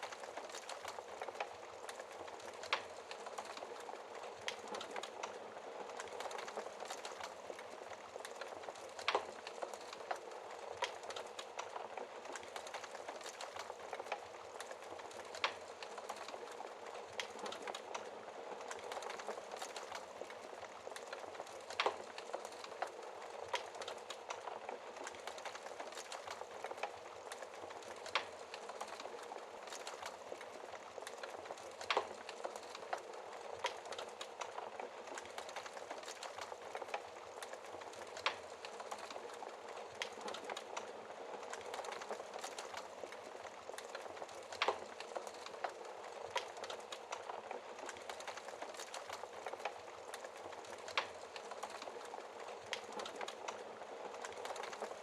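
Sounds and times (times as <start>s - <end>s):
fire pops: 0.0s - 54.9s
wood fire crackling: 0.0s - 55.0s.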